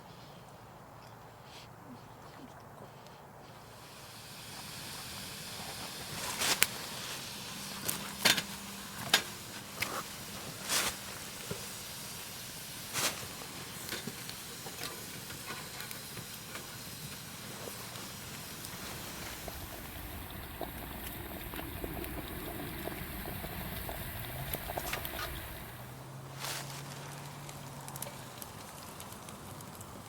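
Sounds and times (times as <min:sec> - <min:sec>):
campfire hissing and crackling: 0:03.5 - 0:30.0
burning wood cracking and popping: 0:07.5 - 0:26.0, 0:26.6 - 0:30.0.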